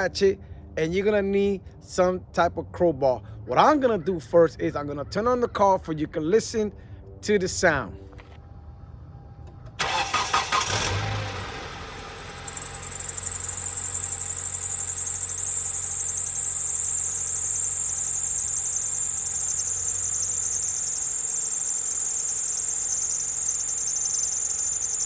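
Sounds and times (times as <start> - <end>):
car engine running: 8.1 - 25.0
belt squealing: 9.5 - 25.0.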